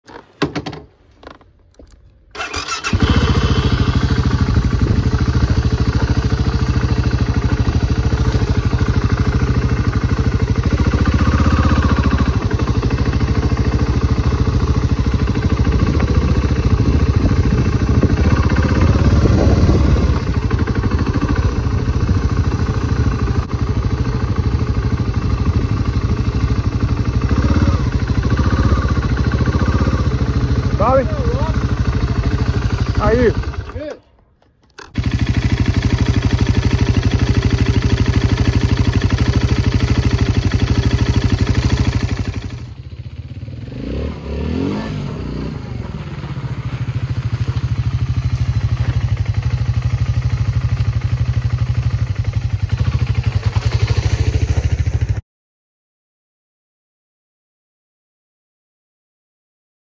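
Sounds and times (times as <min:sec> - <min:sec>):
motorcycle engine running: 0:01.2 - 0:55.2.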